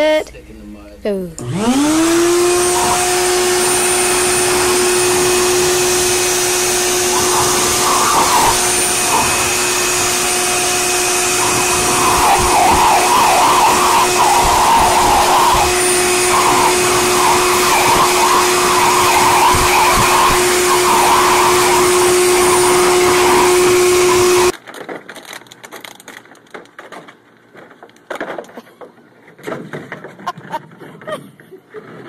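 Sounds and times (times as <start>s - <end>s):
electric blower motor running: 1.4s - 24.6s.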